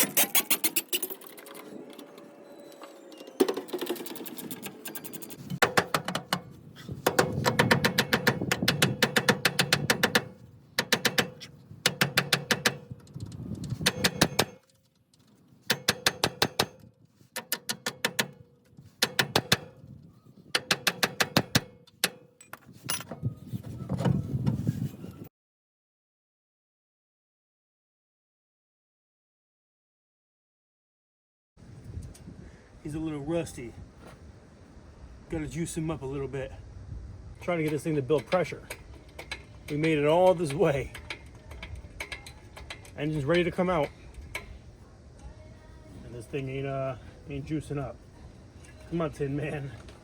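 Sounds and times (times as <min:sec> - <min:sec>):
hand ratchet clicking: 0:07.0 - 0:14.7, 0:20.6 - 0:22.2, 0:37.6 - 0:44.6.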